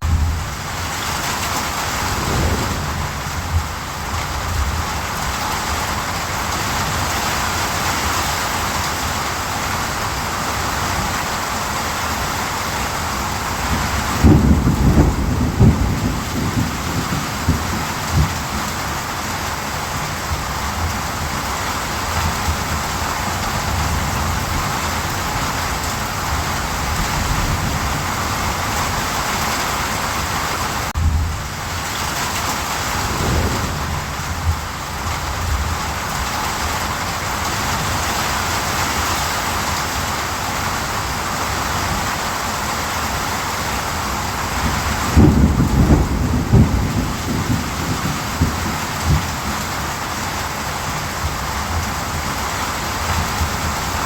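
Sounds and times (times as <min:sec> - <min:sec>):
heavy rain falling: 0:00.0 - 0:54.0
deep low rumbles: 0:01.8 - 0:04.9, 0:32.8 - 0:35.7.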